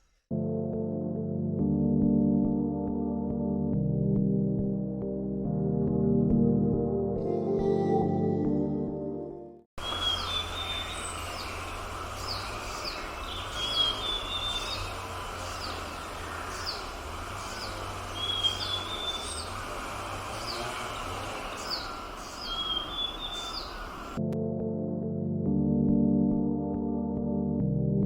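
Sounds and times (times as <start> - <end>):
high bird notes: 9.8 - 24.2
steady low hum: 9.9 - 24.2.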